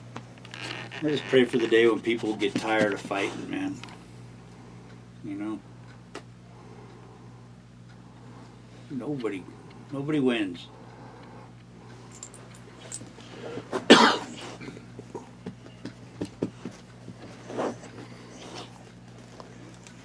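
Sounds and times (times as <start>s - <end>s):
person coughing: 13.9s - 14.5s.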